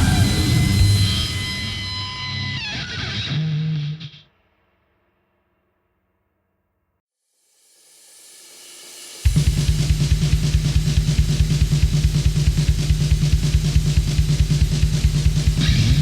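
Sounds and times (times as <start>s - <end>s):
rapid drumming: 0.0s - 2.0s, 8.9s - 16.0s
metal band playing: 0.0s - 4.2s, 15.3s - 16.0s
heavy distorted guitar: 0.0s - 4.3s, 15.4s - 16.0s.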